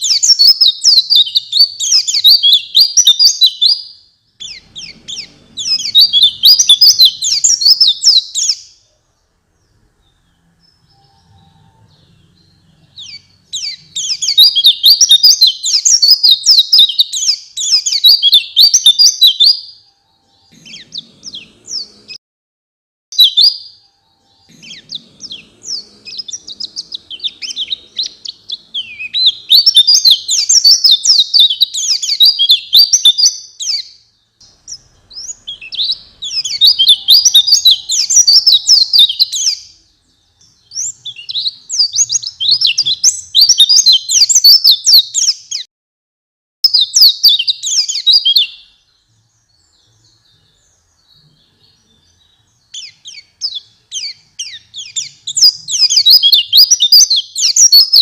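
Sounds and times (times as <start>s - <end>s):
bird twittering song: 0.0s - 22.2s, 23.2s - 45.7s, 46.6s - 58.0s.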